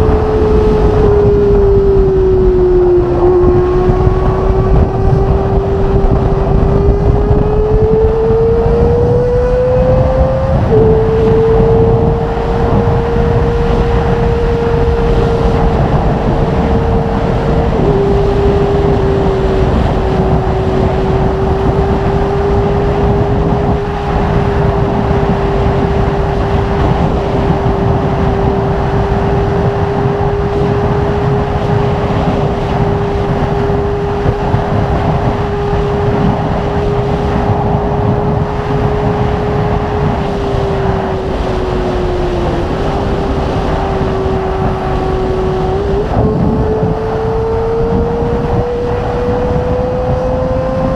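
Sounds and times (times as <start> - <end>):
motorcycle engine at high revs: 0.0 - 50.9.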